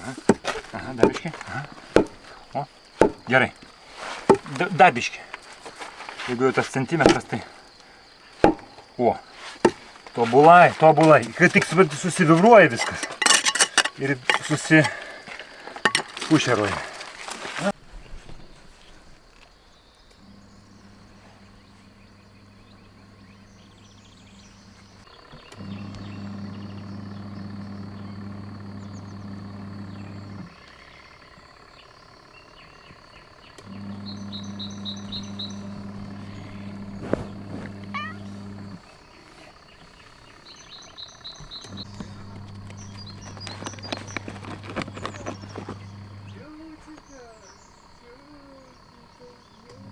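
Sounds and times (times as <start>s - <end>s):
birds chirping: 0.0s - 49.9s
sharp knocks: 0.3s - 2.3s, 3.0s - 3.3s, 8.4s - 8.8s
electric motor humming: 20.2s - 30.5s, 33.6s - 38.9s, 41.5s - 47.1s.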